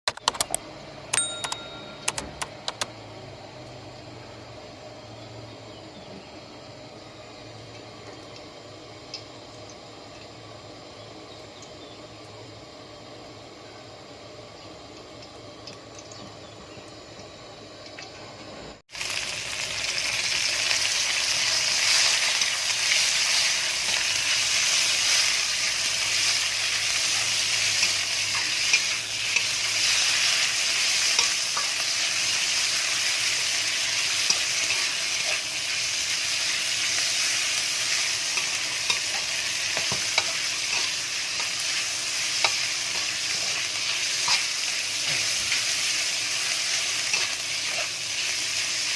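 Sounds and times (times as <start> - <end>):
food sizzling in a pan: 18.9 - 48.9.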